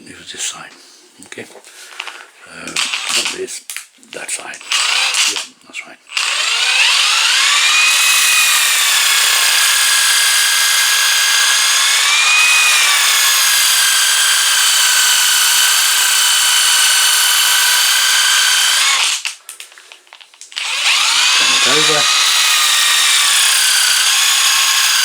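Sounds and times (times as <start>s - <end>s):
power tool motor whine: 4.6s - 5.4s, 6.2s - 19.3s, 20.6s - 25.0s.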